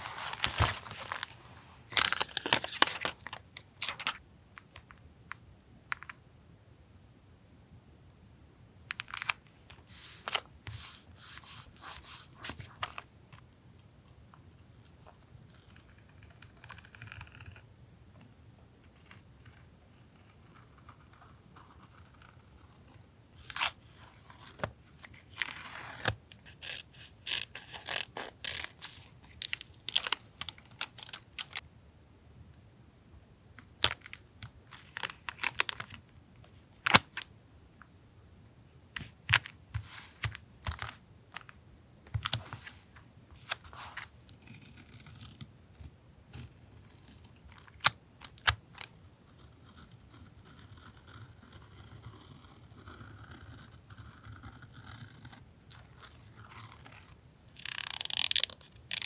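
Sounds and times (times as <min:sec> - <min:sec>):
paper rustling and crinkling: 0:00.0 - 0:04.2, 0:09.0 - 0:13.1, 0:23.5 - 0:31.6, 0:39.0 - 0:44.2.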